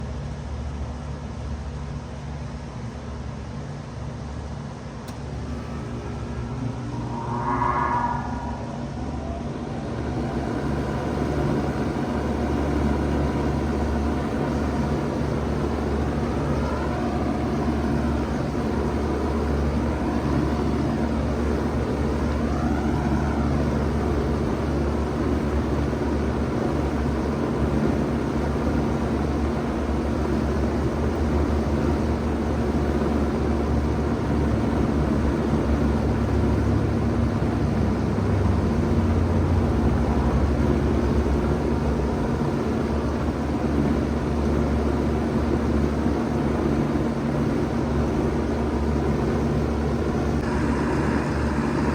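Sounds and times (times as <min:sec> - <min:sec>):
heat pump humming: 0:05.1 - 0:51.9
rush of air: 0:05.4 - 0:10.9
faint wavering tone: 0:05.4 - 0:25.1.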